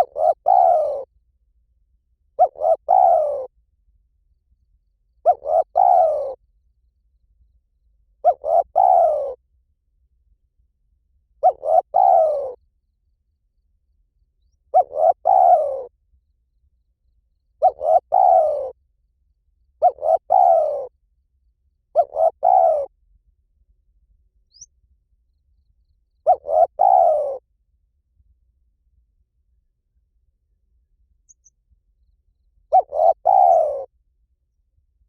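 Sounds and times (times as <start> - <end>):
dove cooing: 0.0 - 1.1, 2.4 - 3.5, 5.2 - 6.4, 8.2 - 9.4, 11.4 - 12.6, 14.7 - 15.9, 17.6 - 18.8, 19.8 - 21.0, 21.9 - 22.9, 26.2 - 27.4, 32.7 - 33.9
faint high chirp: 24.4 - 27.2, 31.2 - 33.8.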